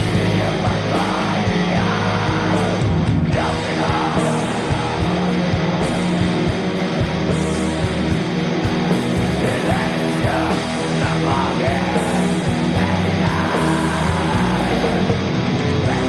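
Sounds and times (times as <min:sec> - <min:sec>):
distorted guitars: 0:00.0 - 0:16.0
harsh yelled vocals: 0:00.0 - 0:16.0
pounding drum beat: 0:00.0 - 0:16.0.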